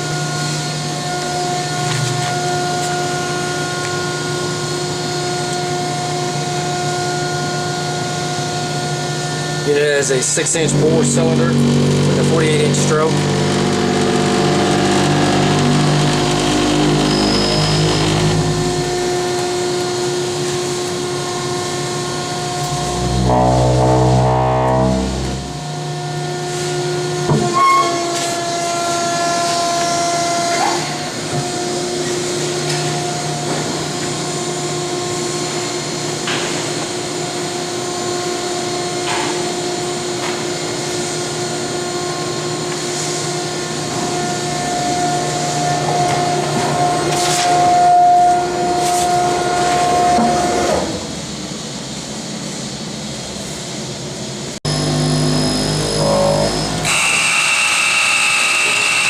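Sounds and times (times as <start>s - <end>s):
hydraulic pump motor humming: 10.4s - 20.9s, 21.9s - 26.2s, 54.7s - 59.0s.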